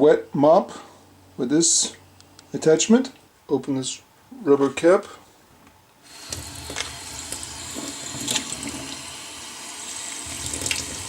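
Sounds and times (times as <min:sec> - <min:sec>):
tap water pouring into plastic tank: 0:06.2 - 0:11.0.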